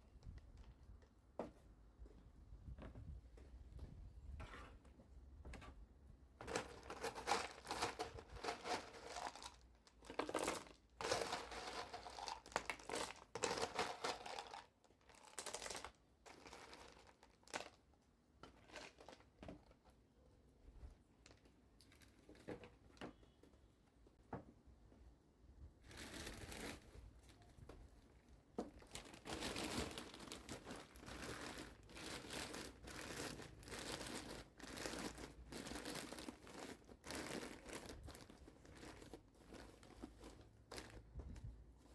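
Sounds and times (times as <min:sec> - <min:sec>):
crinkling rustling handling noise: 0:06.3 - 0:19.9, 0:25.8 - 0:41.9.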